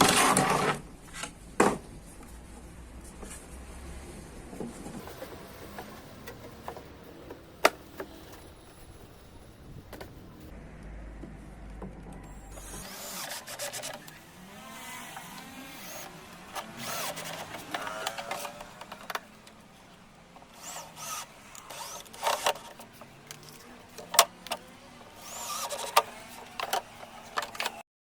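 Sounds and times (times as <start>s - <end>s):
small electric motor whirring: 12.3s - 19.2s, 20.4s - 27.8s.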